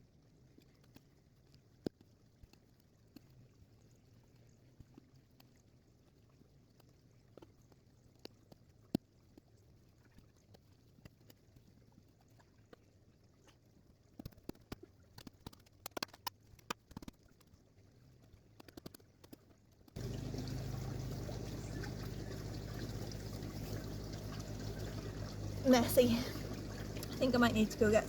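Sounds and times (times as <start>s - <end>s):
running water rushing: 20.0s - 28.0s.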